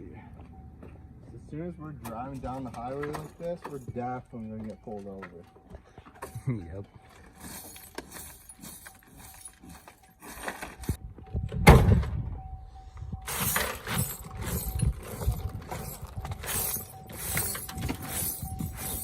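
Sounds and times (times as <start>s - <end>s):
rattling scraping knocks: 13.3s - 19.0s.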